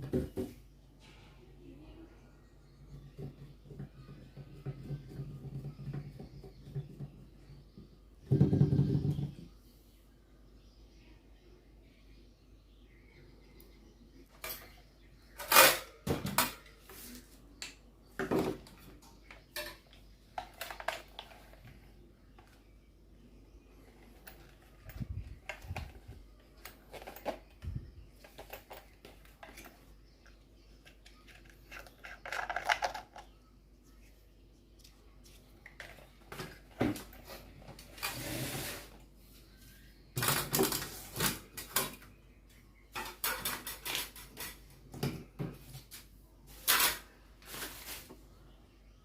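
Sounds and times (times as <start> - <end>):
parts scraping: 14.3 - 17.4, 34.8 - 39.0.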